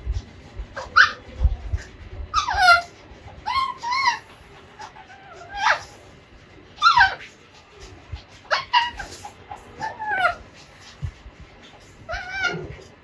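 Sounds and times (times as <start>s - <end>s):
parakeet squeaky calls: 2.3s - 6.0s, 6.8s - 7.3s, 8.4s - 11.0s.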